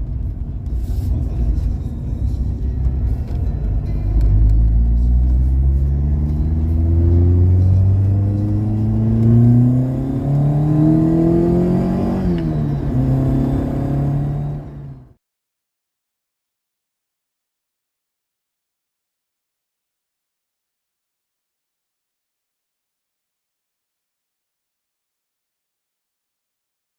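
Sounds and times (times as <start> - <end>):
car engine accelerating: 0.0 - 15.2.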